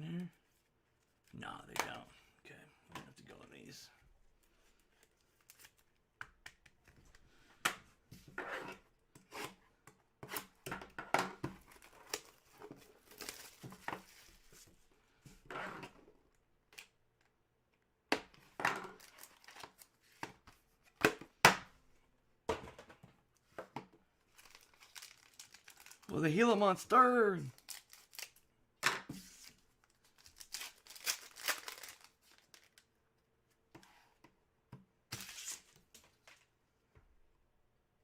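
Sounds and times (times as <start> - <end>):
trading cards rustling and crinkling: 4.6 - 7.2, 11.7 - 14.7, 18.8 - 21.0, 24.2 - 28.4, 29.2 - 32.9, 35.1 - 36.5.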